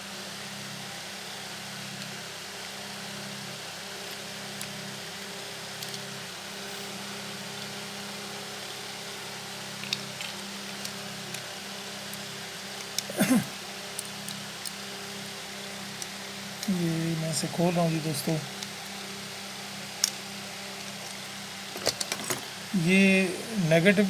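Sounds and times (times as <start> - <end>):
steady low hum: 13.0 - 13.6, 22.6 - 24.0.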